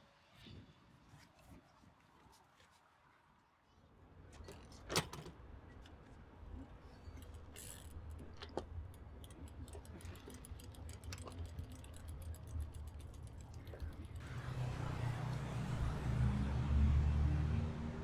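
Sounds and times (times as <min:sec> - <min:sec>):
bicycle freewheel ticking: 0:07.1 - 0:14.2.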